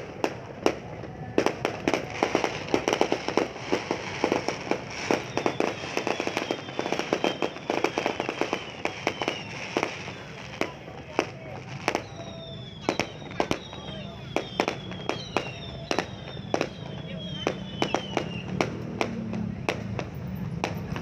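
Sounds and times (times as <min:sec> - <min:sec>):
fireworks cracking and banging: 0:00.0 - 0:21.0
faint falling whistle: 0:05.1 - 0:10.4, 0:11.9 - 0:18.6.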